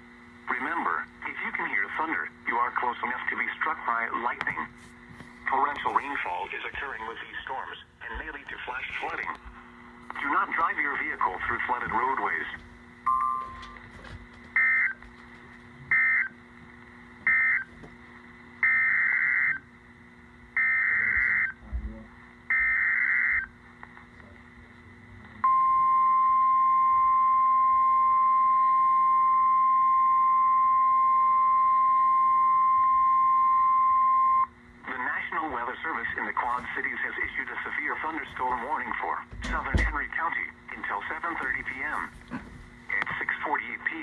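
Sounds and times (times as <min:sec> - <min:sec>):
single-pitch warning alarm tone: 0:13.0 - 0:14.0, 0:14.6 - 0:15.0, 0:15.9 - 0:16.4, 0:17.2 - 0:17.7, 0:18.6 - 0:19.7, 0:20.6 - 0:21.6, 0:22.5 - 0:23.6, 0:25.4 - 0:34.6.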